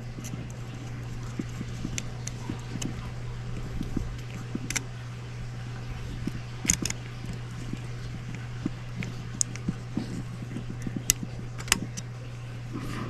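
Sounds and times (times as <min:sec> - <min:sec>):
steady low hum: 0:00.0 - 0:13.0
metallic clicks of rifle parts: 0:06.6 - 0:07.0, 0:11.1 - 0:12.1.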